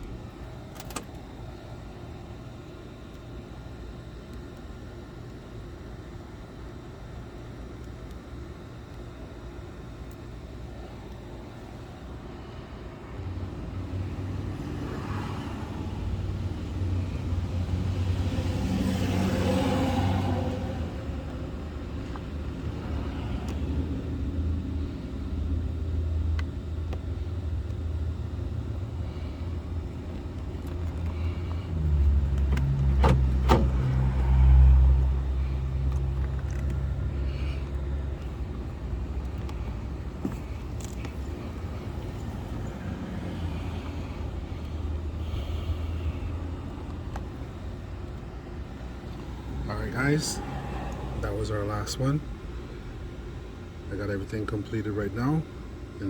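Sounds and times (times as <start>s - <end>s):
low vehicle rumble: 13.2s - 53.8s.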